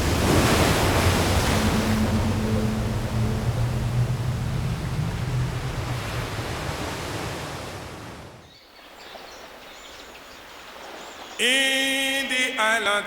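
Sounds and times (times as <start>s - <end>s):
low hum: 0.0s - 7.0s
ocean surf washing: 0.0s - 8.4s.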